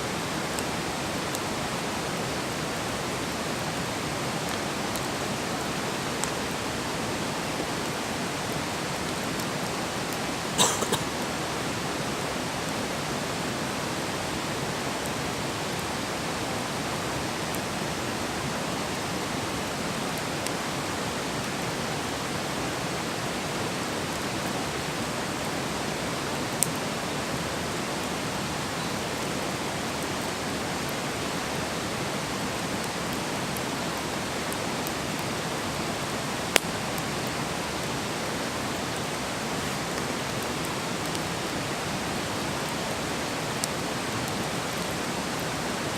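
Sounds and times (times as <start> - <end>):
campfire hissing: 0.0 - 45.9
fire crackling pops: 36.5 - 36.8.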